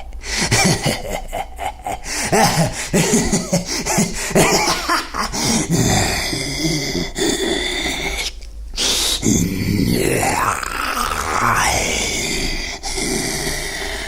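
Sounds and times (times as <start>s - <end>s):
man laughing low: 0.0s - 7.2s.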